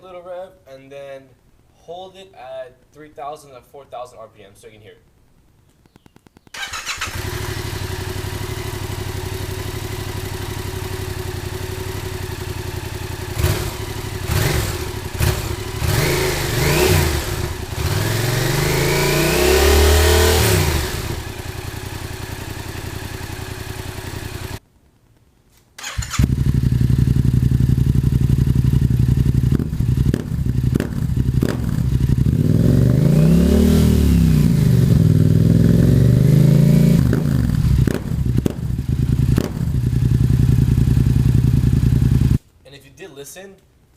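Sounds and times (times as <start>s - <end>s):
motorcycle engine idling and revving: 6.5s - 24.6s, 25.8s - 42.4s.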